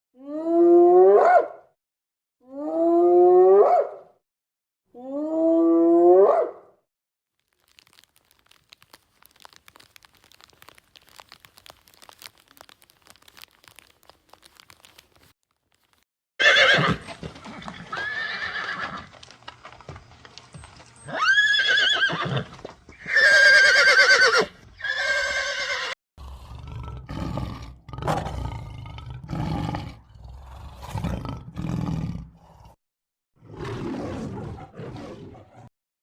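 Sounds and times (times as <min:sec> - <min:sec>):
horse whinnying: 0:16.4 - 0:19.1, 0:21.0 - 0:26.0.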